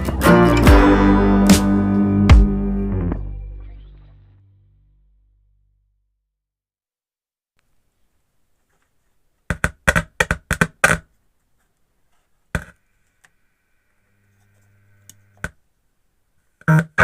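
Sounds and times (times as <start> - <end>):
faint steady hum: 11.1 - 17.0.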